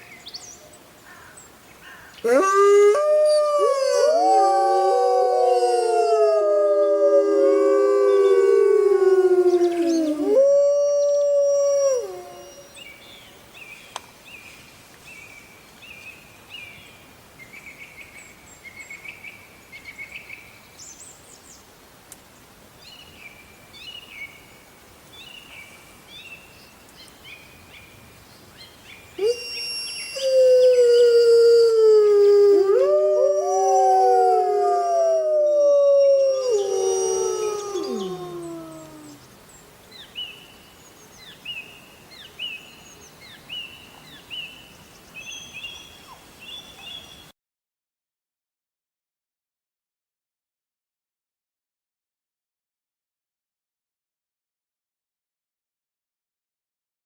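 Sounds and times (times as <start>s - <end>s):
wolves howling in chorus: 2.3s - 12.6s, 30.2s - 39.2s.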